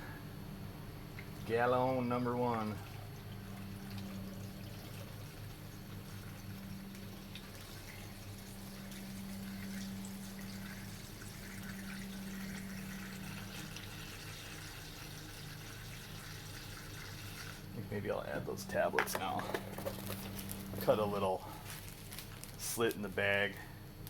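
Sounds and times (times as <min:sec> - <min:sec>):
low hum: 0:00.0 - 0:16.3
liquid pouring into a funnel: 0:01.1 - 0:17.8.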